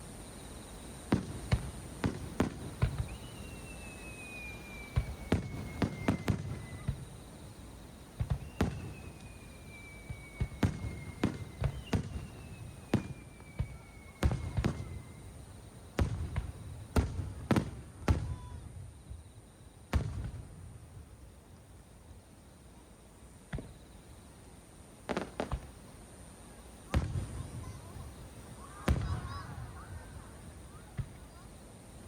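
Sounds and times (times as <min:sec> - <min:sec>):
falling firework whistles: 0:00.0 - 0:22.0, 0:23.4 - 0:32.0
fireworks bangs with rumble: 0:01.1 - 0:07.4, 0:08.1 - 0:19.2, 0:19.9 - 0:21.2, 0:23.5 - 0:23.8, 0:25.1 - 0:25.8, 0:26.9 - 0:31.4.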